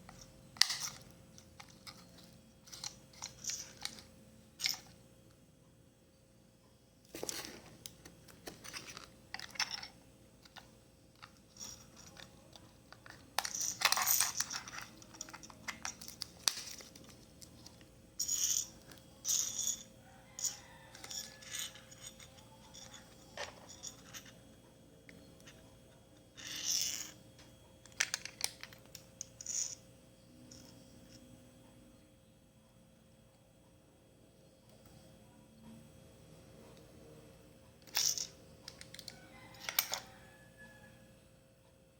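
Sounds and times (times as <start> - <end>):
scraping rustling handling noises: 7.1 - 10.6.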